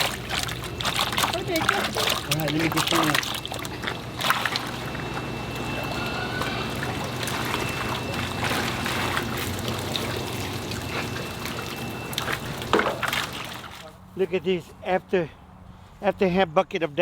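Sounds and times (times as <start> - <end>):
low hum: 0.0 - 13.7
water trickling and sloshing: 0.0 - 14.1.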